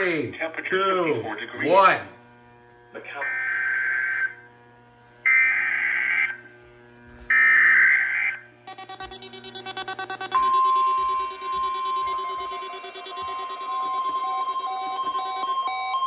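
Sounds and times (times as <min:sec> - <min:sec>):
steady warning alarm tone: 0:02.2 - 0:16.0
screechy digital data tones: 0:07.7 - 0:16.0
fast pulsing electronic beep: 0:08.7 - 0:16.0.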